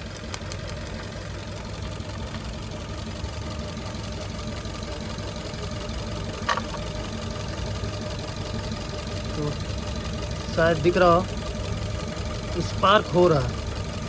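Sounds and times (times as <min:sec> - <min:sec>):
car engine idling roughly: 0:00.0 - 0:14.0.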